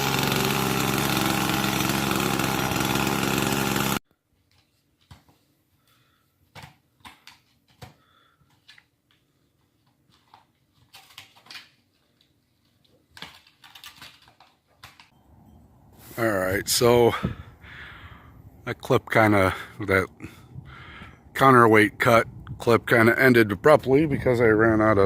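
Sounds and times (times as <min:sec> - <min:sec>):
chainsaw running: 0:00.0 - 0:04.0.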